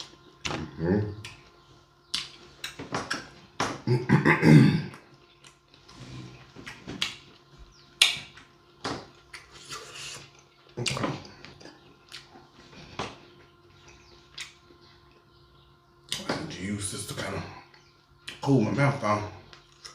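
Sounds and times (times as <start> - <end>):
wet chewing and lip smacking: 6.6 - 8.6, 11.6 - 12.5, 13.9 - 15.2.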